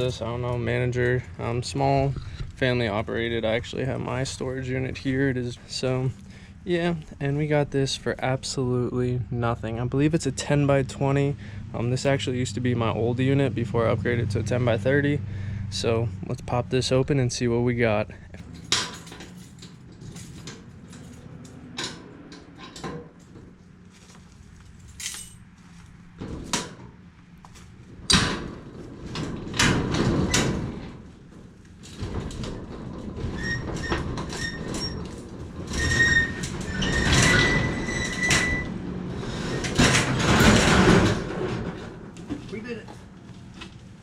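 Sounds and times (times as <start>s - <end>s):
metal roll-up door rattling: 16.8s - 23.6s, 26.2s - 27.0s, 27.8s - 42.8s.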